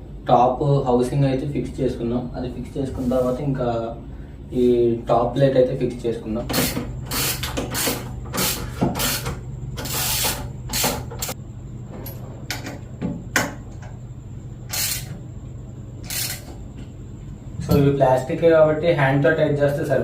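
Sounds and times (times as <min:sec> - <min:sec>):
steady low hum: 0:00.0 - 0:20.0
bicycle parts clicking and scraping: 0:06.6 - 0:11.4, 0:14.7 - 0:15.2, 0:16.0 - 0:16.6.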